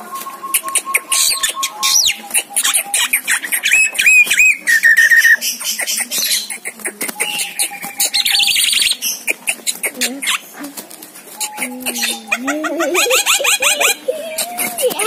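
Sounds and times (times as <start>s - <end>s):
bird trill: 0.0s - 10.4s, 11.3s - 14.7s
bird calling and chattering: 0.0s - 15.0s.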